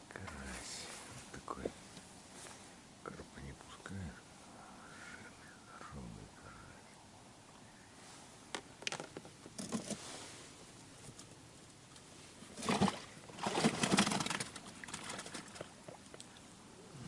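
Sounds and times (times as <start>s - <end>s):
frogs croaking: 3.1s - 8.0s.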